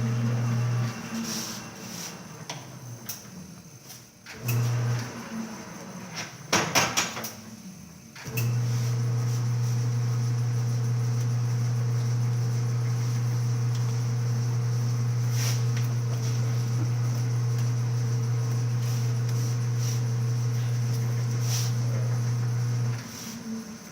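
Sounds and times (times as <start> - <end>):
lathe humming: 0.0 - 2.4, 8.4 - 23.8.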